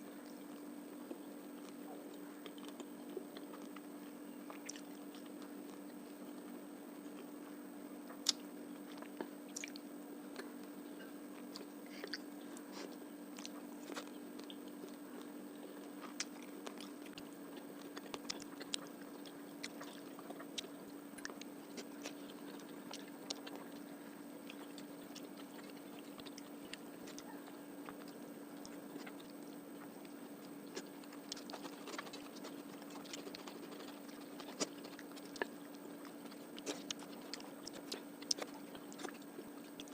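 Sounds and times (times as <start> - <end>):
close chewing and biting: 0.1 - 7.4, 8.1 - 39.9
sharp food crunches: 30.6 - 39.9.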